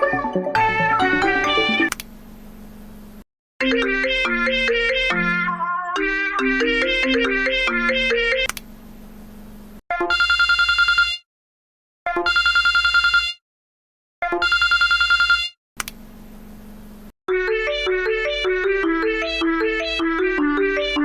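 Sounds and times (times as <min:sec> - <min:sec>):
faint steady hum: 0:02.0 - 0:03.2
telephone ringing: 0:10.1 - 0:11.2, 0:12.3 - 0:13.4, 0:14.4 - 0:15.5.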